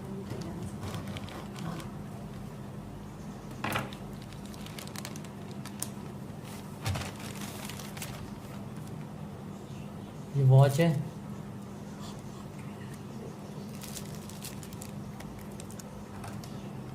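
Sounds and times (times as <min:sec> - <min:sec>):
steady low hum: 0:00.0 - 0:16.9
packaging rustling and clicking: 0:03.9 - 0:06.2, 0:06.8 - 0:09.0, 0:13.7 - 0:16.6.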